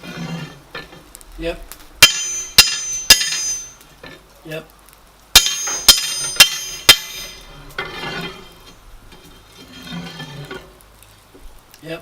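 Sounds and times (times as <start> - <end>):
hammer ringing on steel bar: 2.0 - 3.8, 5.4 - 7.5.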